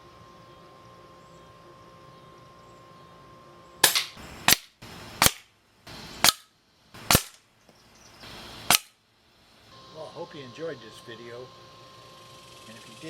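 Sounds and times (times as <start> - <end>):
air rifle shots: 3.8 - 5.5, 6.2 - 7.4, 8.6 - 9.0.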